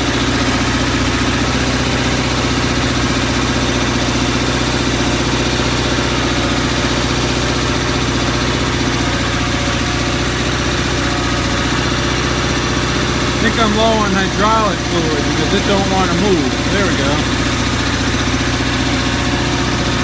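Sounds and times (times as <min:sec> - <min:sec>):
tractor engine running steadily: 0:00.0 - 0:20.0.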